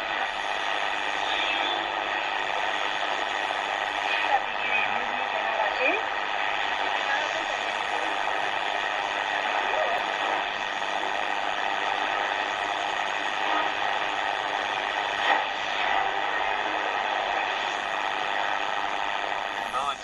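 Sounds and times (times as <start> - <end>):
radio crackle: 0.0 - 20.0
radio static hiss: 0.0 - 20.0.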